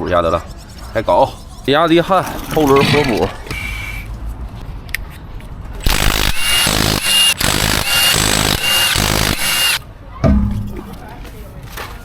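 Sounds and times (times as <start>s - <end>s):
air tool running with high whine: 5.8s - 9.8s.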